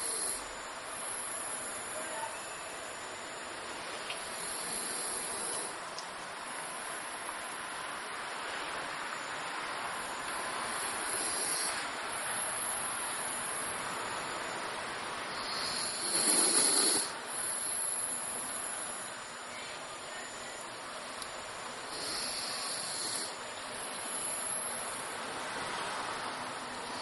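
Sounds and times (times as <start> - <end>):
dog snoring: 0.0 - 0.5, 4.3 - 5.8, 10.8 - 11.9, 15.4 - 18.4, 21.9 - 23.4.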